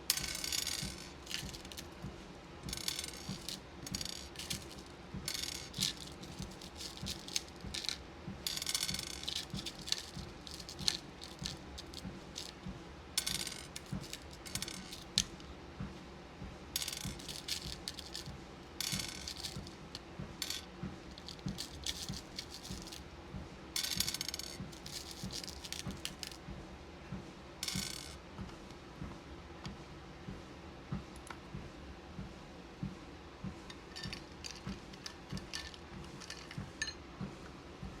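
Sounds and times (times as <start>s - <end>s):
beads rattling and clicking: 0.1s - 12.6s, 13.2s - 15.4s, 16.8s - 23.0s, 23.8s - 26.4s, 27.6s - 28.2s, 33.9s - 36.6s.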